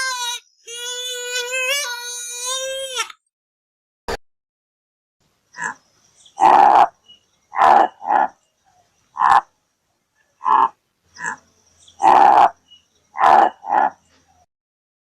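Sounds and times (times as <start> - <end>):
animal harsh grunting calls: 5.6 - 5.8, 6.4 - 8.4, 9.2 - 9.5, 10.4 - 11.4, 12.0 - 12.6, 13.2 - 14.0.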